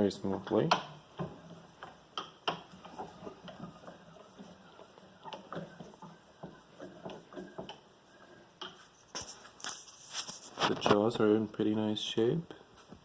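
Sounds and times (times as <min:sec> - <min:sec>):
bench vise screw cranking: 0:00.0 - 0:08.9
light clicks and knocks: 0:00.0 - 0:09.4.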